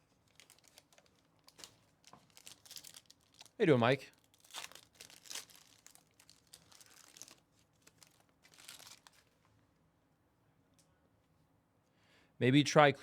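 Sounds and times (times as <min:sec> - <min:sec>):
plastic wrapping crinkling and tearing: 0:00.0 - 0:09.4.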